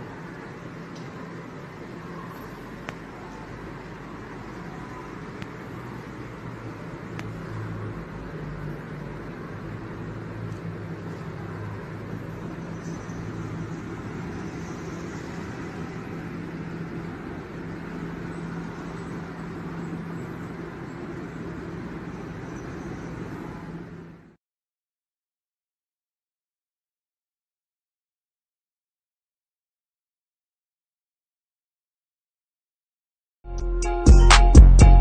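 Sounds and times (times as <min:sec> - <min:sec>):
motor vehicle humming: 0:00.0 - 0:24.4.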